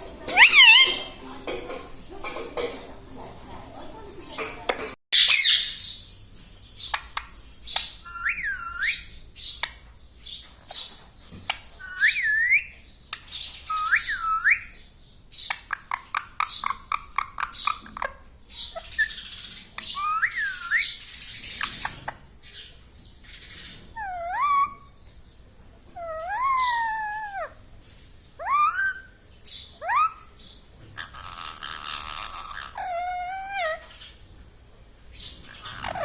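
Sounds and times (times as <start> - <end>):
parrot squawking: 0.3 - 1.2, 5.2 - 5.9, 7.7 - 9.2, 11.8 - 12.7, 24.0 - 24.9, 26.0 - 27.6, 28.4 - 29.2, 29.8 - 30.4, 31.0 - 34.1, 35.4 - 36.0
parrot whistled calls: 0.3 - 1.2, 8.0 - 9.1, 11.8 - 12.8, 13.7 - 14.8, 20.0 - 21.0.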